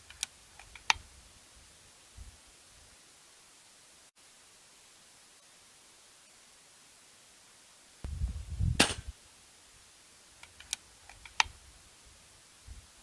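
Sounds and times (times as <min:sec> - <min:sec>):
air rifle shot: 0:08.7 - 0:09.1
light clicks: 0:10.4 - 0:11.6.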